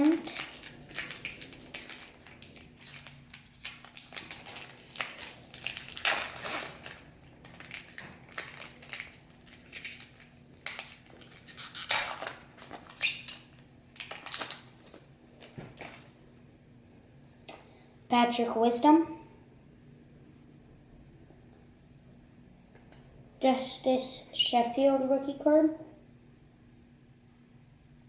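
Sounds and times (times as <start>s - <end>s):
foil wrapper crinkling and tearing: 0.0s - 16.1s.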